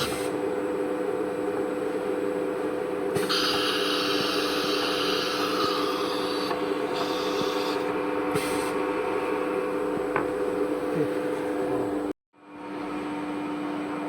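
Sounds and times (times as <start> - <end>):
machine hum: 0.2 - 14.0
compressed air hissing: 3.2 - 8.8.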